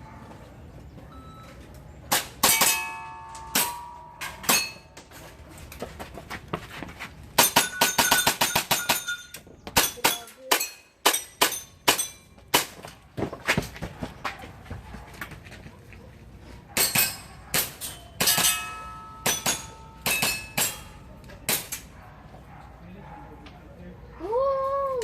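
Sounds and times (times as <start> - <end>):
metallic clangs from hits: 2.1 - 5.2, 7.4 - 12.7, 16.8 - 21.9.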